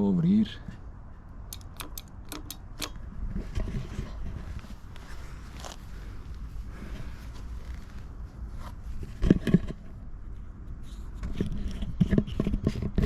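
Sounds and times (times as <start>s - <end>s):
low steady hum: 0.0s - 13.0s
handling knocks and scrapes: 10.8s - 13.0s.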